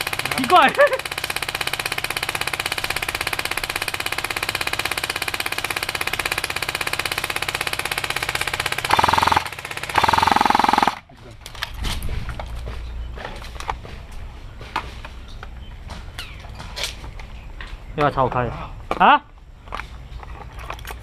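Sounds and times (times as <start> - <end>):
airsoft rifle firing full auto: 0.0 - 11.0.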